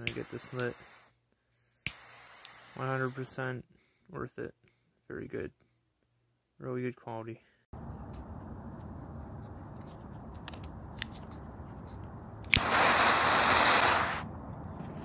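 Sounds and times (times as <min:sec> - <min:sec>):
torch lighter jet hiss: 0:00.0 - 0:01.1, 0:01.8 - 0:03.3, 0:12.4 - 0:15.0
torch lighter ignition click: 0:01.8 - 0:02.6, 0:12.4 - 0:14.3.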